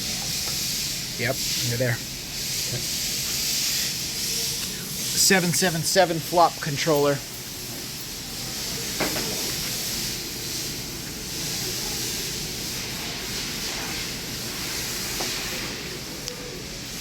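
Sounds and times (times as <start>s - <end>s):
steady hiss: 0.0s - 17.0s.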